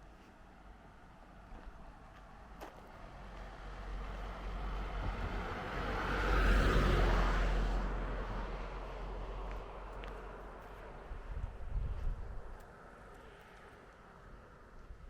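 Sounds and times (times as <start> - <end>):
vehicle passing by: 3.1 - 12.2.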